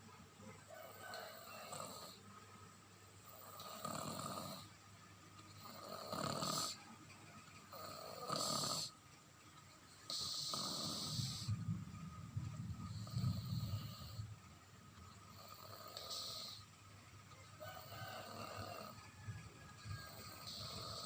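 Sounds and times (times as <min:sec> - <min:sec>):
baby snoring: 0:00.9 - 0:02.2, 0:03.2 - 0:04.8, 0:05.6 - 0:06.8, 0:07.7 - 0:09.0, 0:10.1 - 0:11.6, 0:12.8 - 0:14.3, 0:15.2 - 0:16.7, 0:17.8 - 0:19.0, 0:19.8 - 0:21.0.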